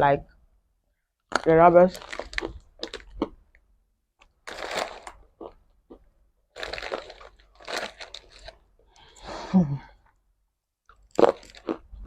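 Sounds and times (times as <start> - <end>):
crunching crisp fried snack: 1.3 - 3.3, 4.4 - 5.6, 6.5 - 9.2, 10.9 - 12.0.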